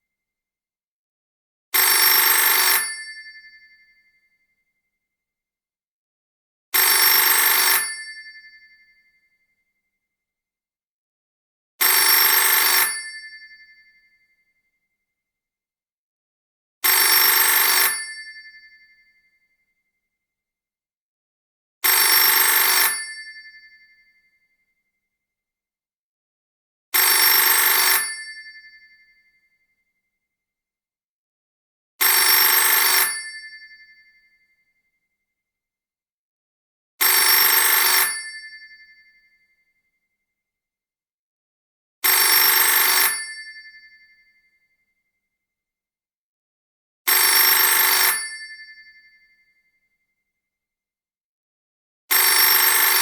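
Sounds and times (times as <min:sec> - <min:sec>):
telephone bell ringing: 0:01.8 - 0:03.2, 0:06.8 - 0:08.2, 0:11.9 - 0:13.2, 0:16.9 - 0:18.3, 0:22.0 - 0:23.3, 0:27.0 - 0:28.8, 0:32.1 - 0:33.5, 0:37.1 - 0:38.6, 0:42.1 - 0:43.8, 0:47.1 - 0:48.8, 0:52.1 - 0:53.0.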